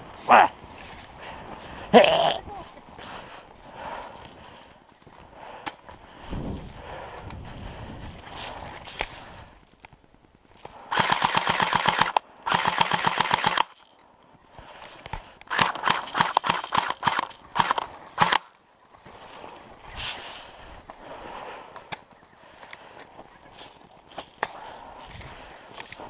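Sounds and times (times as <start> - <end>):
airsoft gun firing bursts: 10.8 - 13.8, 15.5 - 18.5.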